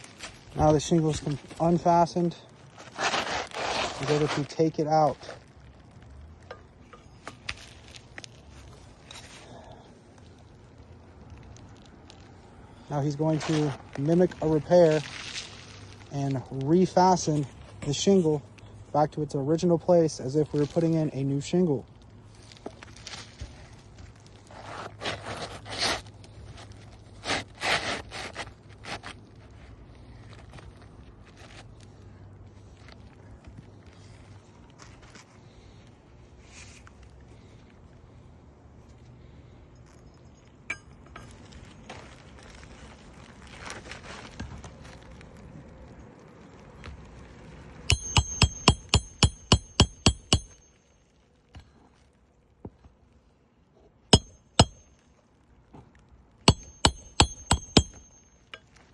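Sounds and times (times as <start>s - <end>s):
shingles scraping: 0.0s - 5.5s, 24.4s - 29.7s
hammer striking nail: 47.9s - 50.6s, 54.2s - 54.8s, 56.5s - 58.2s.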